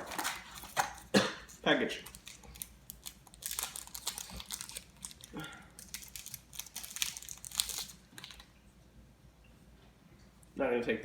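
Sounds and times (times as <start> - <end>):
plastic packaging crinkling: 0.0 - 8.6.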